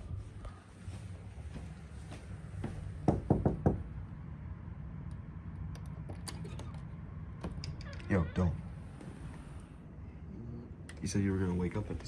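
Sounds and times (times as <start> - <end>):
knuckles knocking on door: 3.0 - 3.8.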